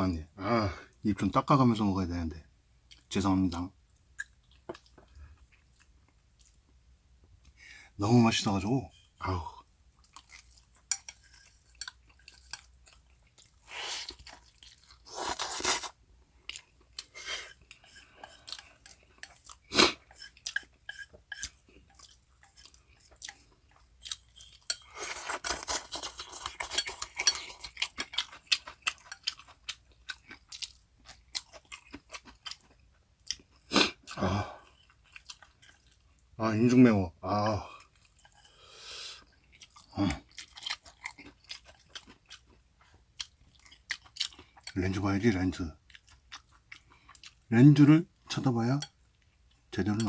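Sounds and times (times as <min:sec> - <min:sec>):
chewing noodles: 0:09.9 - 0:36.3, 0:37.7 - 0:45.0, 0:45.6 - 0:50.0.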